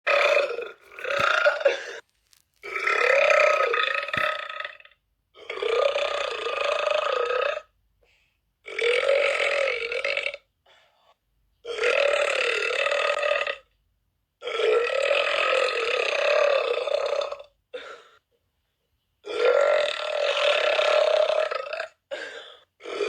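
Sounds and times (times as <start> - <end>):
woman burping: 0.1 - 2.0, 2.6 - 4.7.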